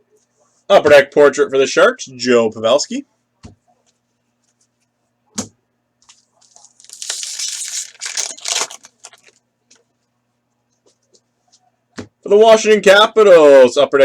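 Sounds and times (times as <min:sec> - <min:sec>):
foil wrapper tearing and crinkling: 0:06.1 - 0:09.4.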